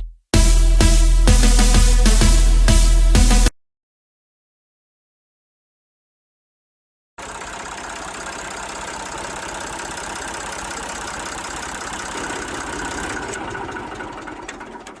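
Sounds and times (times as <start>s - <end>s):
excavator diesel engines running: 7.2s - 15.0s.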